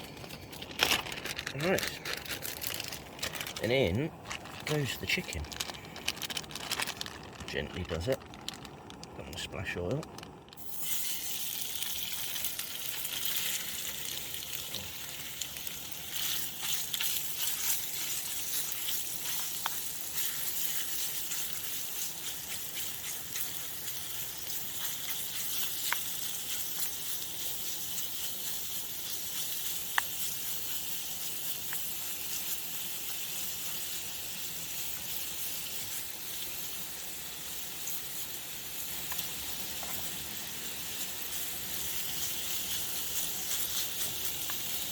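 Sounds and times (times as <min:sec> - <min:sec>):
chicken sizzling in oil: 0:10.6 - 0:44.9.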